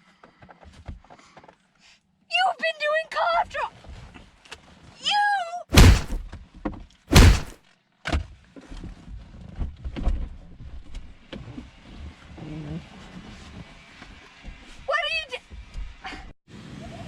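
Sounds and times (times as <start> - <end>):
loud thuds: 5.7 - 6.2, 7.1 - 7.5
low rustling: 5.7 - 6.2, 7.1 - 7.5.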